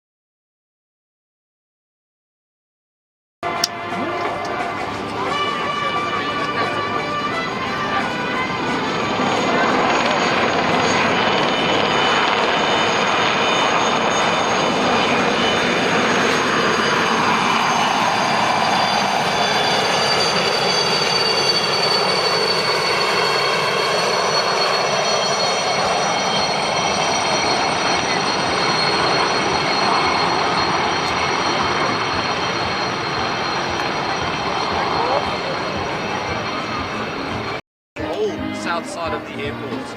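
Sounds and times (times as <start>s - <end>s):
aircraft engine roar: 3.4s - 39.9s
high whining tones: 3.4s - 39.9s.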